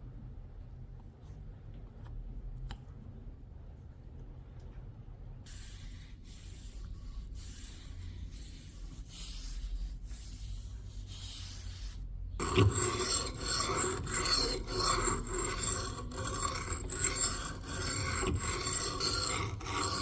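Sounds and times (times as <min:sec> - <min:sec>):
low steady hum: 0:00.0 - 0:20.0
abrasive rubbing strokes: 0:05.5 - 0:20.0.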